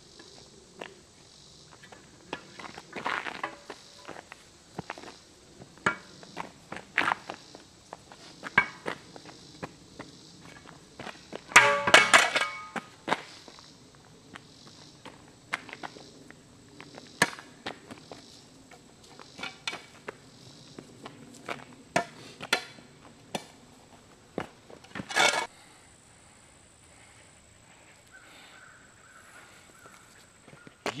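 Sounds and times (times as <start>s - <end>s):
shovel striking ground: 11.5s - 12.8s, 24.9s - 25.5s.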